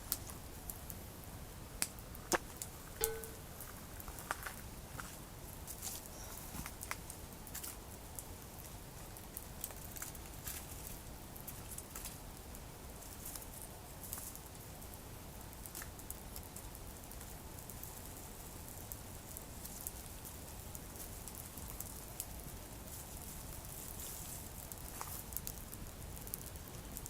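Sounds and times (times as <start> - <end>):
campfire crackling: 0.0 - 27.0.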